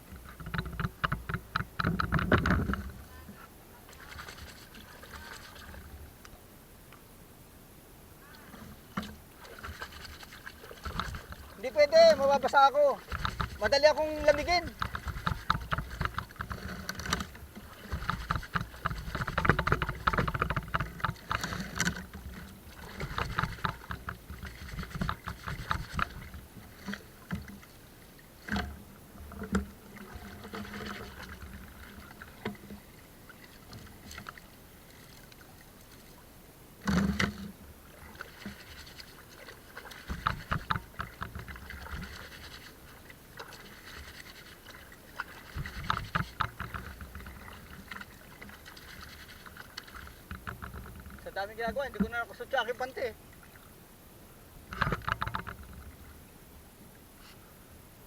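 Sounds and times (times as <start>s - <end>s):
knocks and clicks on boat: 0.0s - 3.4s, 8.3s - 27.8s, 28.4s - 32.9s, 36.8s - 37.6s, 38.2s - 42.8s, 43.4s - 53.0s, 54.7s - 56.1s
water sloshing: 0.0s - 6.4s, 8.2s - 57.4s.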